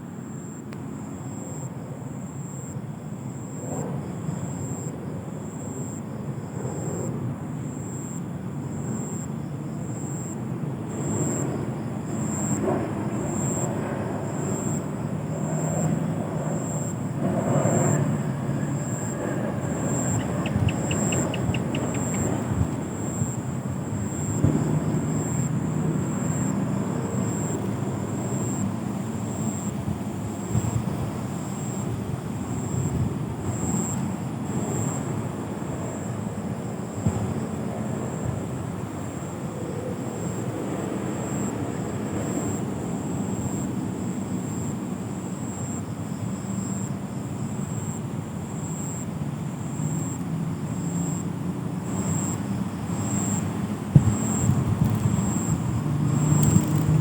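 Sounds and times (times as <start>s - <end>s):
fainter insect call: 0.0s - 57.0s
insects trilling: 0.0s - 57.0s
fast run of ticks: 19.7s - 22.8s, 54.0s - 57.0s.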